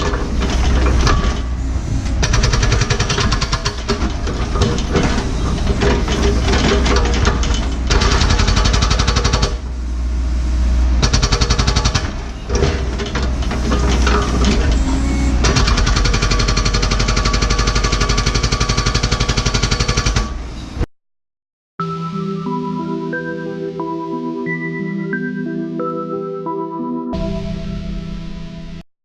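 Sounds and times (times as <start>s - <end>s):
hydraulic hammer pounding rock: 0.0s - 9.7s, 11.0s - 20.4s
diesel engine running: 0.0s - 20.8s.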